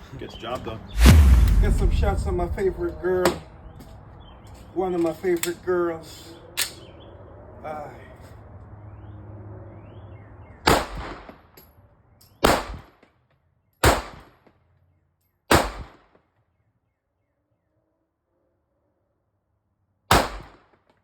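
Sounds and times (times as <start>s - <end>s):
gunshots with echo: 1.0s - 3.6s, 10.7s - 11.3s.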